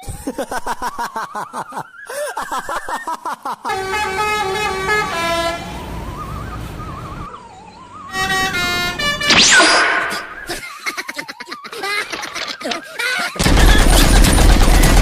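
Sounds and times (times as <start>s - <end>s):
multi-tone bus horn melody: 3.7s - 7.1s, 8.1s - 10.3s.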